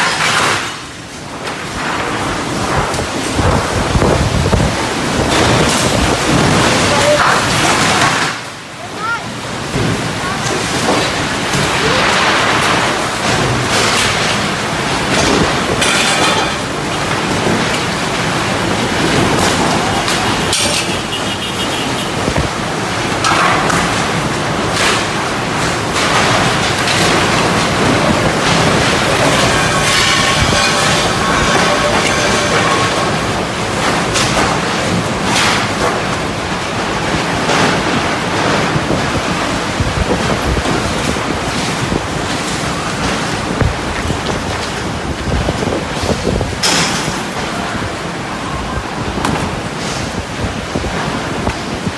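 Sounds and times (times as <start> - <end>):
heavy rain roaring: 0.0 - 51.9
wind gusts: 1.3 - 51.9
wind buffeting microphone: 2.2 - 7.8, 22.1 - 23.2, 36.4 - 51.9.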